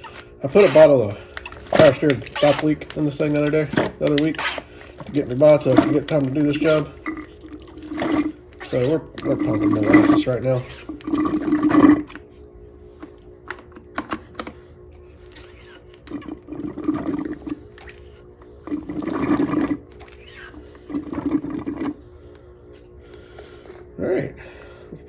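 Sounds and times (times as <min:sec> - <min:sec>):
hand pump strokes: 0:00.0 - 0:12.0, 0:15.3 - 0:21.9
liquid gurgling: 0:00.0 - 0:12.2, 0:15.4 - 0:22.2.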